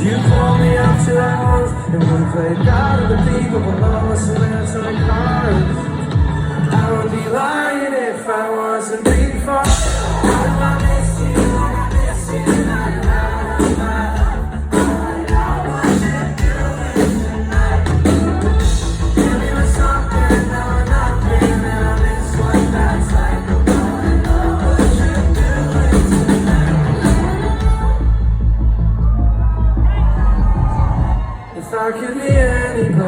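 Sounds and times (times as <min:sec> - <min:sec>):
bass line: 0:00.0 - 0:07.2, 0:09.1 - 0:31.5
drum beat: 0:09.1 - 0:28.0
rock band playing: 0:09.1 - 0:28.9.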